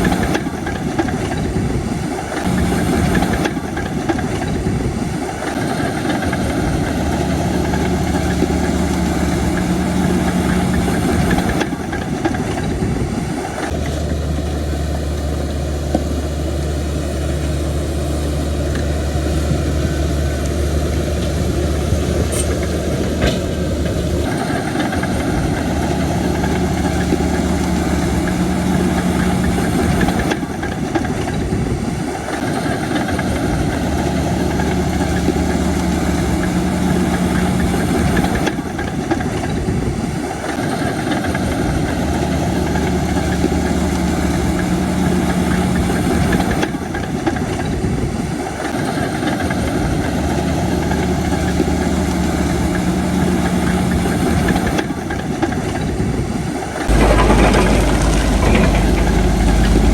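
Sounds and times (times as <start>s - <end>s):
bulldozer diesel engine running: 0.0s - 59.9s.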